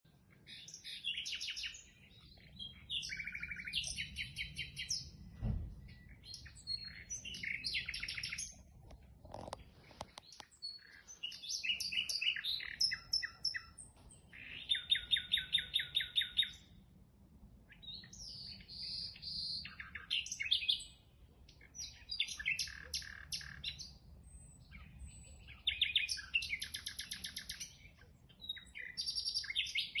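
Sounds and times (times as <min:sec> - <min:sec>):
songbird chirps and trills: 0:00.1 - 0:30.0
dull thump: 0:05.4 - 0:05.8.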